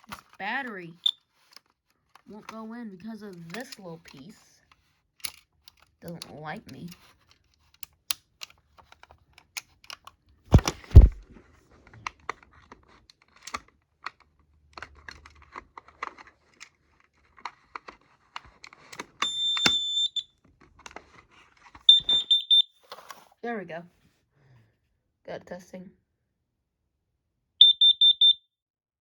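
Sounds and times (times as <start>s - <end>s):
small plastic clicks and fumbling: 0.0s - 11.2s, 11.8s - 22.3s
smoke alarm high beep: 19.2s - 20.3s, 21.9s - 22.8s, 27.6s - 28.4s.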